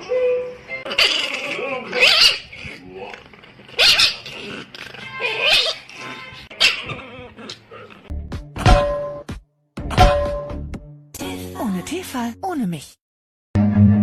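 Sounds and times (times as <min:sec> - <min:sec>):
dog calling: 0:00.0 - 0:02.8, 0:03.7 - 0:08.0.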